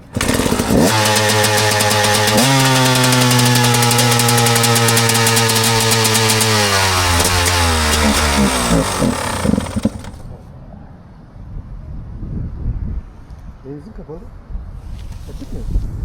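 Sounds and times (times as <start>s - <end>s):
dirt bike engine idling and stalling: 0.0s - 10.4s.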